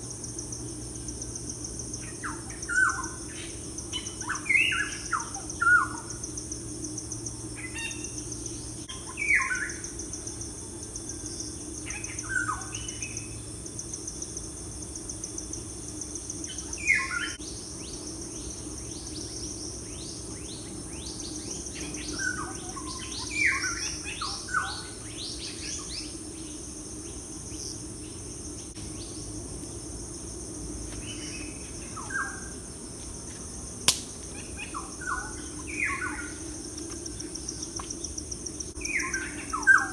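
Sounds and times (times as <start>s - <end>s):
high insect trill: 0.0s - 39.9s
sharp click: 33.8s - 34.3s.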